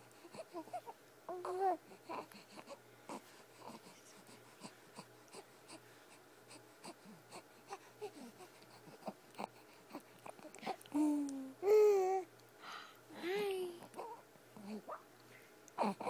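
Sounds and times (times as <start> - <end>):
baby cooing: 0.3 - 3.8, 6.8 - 12.3, 15.8 - 16.0.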